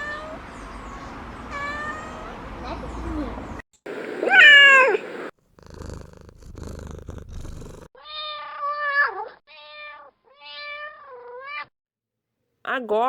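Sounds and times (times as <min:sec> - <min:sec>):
cat meowing: 0:03.9 - 0:05.3
cat purring: 0:03.9 - 0:07.9.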